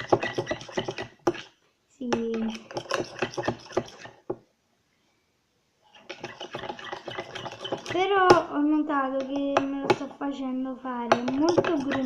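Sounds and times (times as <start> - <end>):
spoon scraping metal bowl: 0.0 - 1.6, 2.2 - 4.3, 5.9 - 8.2, 11.1 - 12.0.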